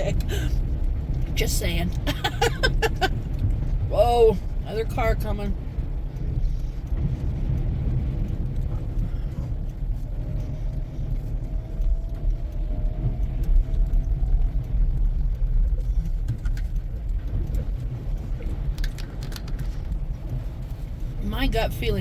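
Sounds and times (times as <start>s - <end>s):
car driving through snow: 0.0s - 22.0s.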